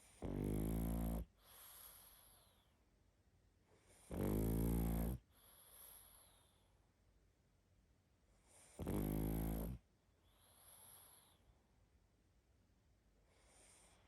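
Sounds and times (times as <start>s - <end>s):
dog snoring: 0.0s - 2.7s, 3.8s - 6.5s, 8.4s - 11.4s.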